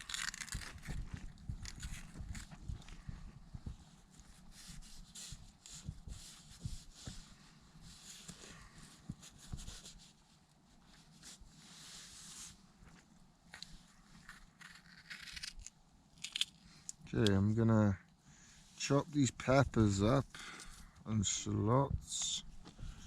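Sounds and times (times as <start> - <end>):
tent fabric rustling: 0.0 - 14.1.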